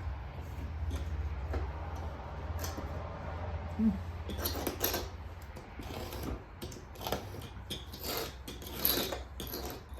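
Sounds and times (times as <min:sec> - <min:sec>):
hand tool scraping caulking: 0:04.2 - 0:09.9.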